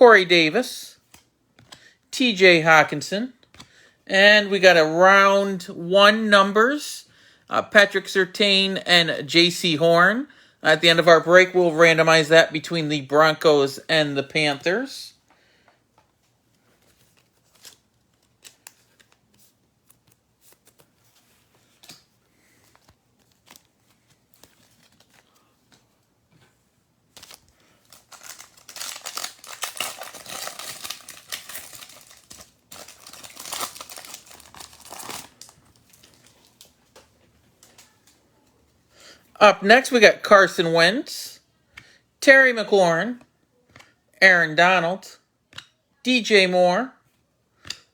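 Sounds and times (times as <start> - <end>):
card pack wrapper crinkling and tearing: 27.1 - 36.8
trading cards clicking and tapping: 43.7 - 44.0.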